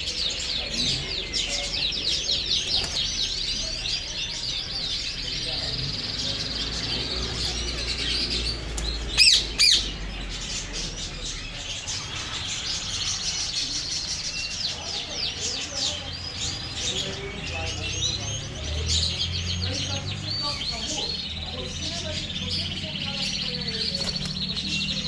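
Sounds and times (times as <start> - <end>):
parakeets chattering and chirping: 0.0 - 25.0
loud shrill bird calls: 6.2 - 10.7.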